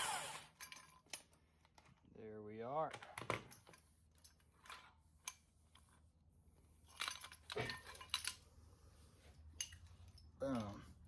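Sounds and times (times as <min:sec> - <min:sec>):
hand tools clinking: 0:00.5 - 0:01.4, 0:06.9 - 0:08.5.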